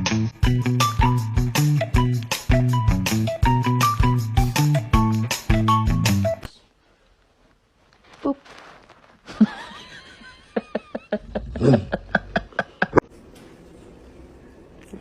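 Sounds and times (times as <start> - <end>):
person laughing: 9.2 - 13.0.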